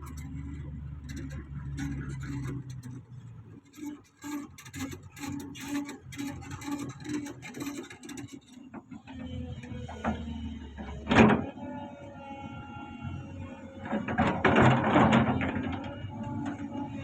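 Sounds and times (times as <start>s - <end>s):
rapid metallic clatter: 0.0s - 8.9s
steady mechanical whine: 8.9s - 17.0s.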